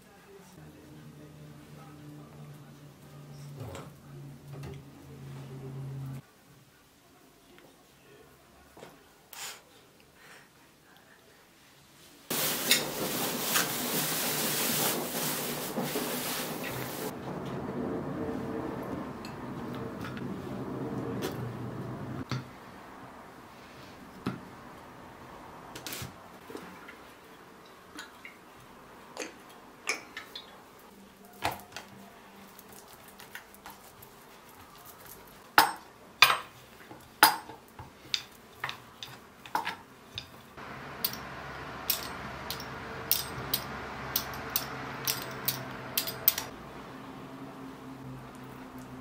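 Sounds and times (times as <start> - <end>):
steady hiss: 12.3 - 17.2
dishes and utensils clinking: 41.0 - 46.5.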